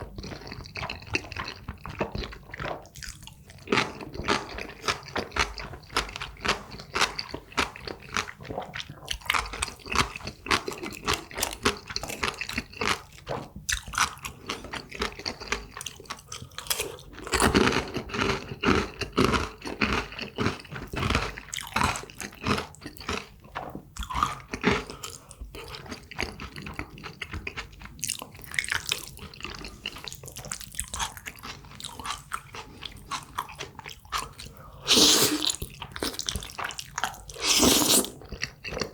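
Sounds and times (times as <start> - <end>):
person chewing and biting food: 0.2 - 7.4, 15.8 - 17.5, 24.0 - 38.9.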